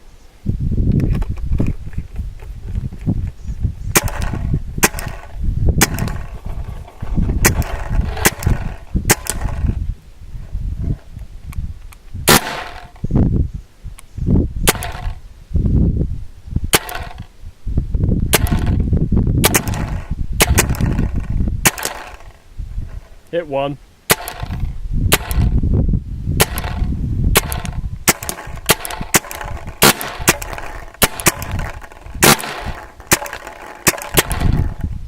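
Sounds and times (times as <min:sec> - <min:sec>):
paintball gun shots: 0:03.9 - 0:06.7, 0:07.4 - 0:09.8, 0:12.2 - 0:13.0, 0:14.6 - 0:15.2, 0:16.7 - 0:17.3, 0:18.3 - 0:18.8, 0:19.4 - 0:23.0, 0:24.1 - 0:25.6, 0:26.4 - 0:34.9.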